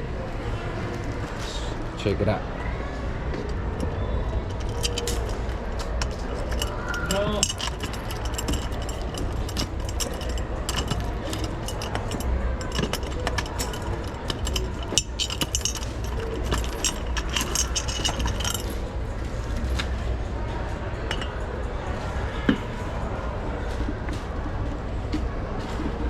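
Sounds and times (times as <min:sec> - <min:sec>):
small metal pieces jingling: 0:04.4 - 0:18.8.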